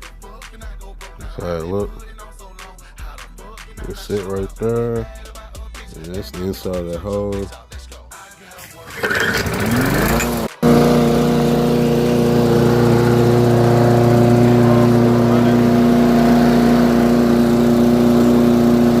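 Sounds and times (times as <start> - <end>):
lawnmower engine running: 8.9 - 19.0.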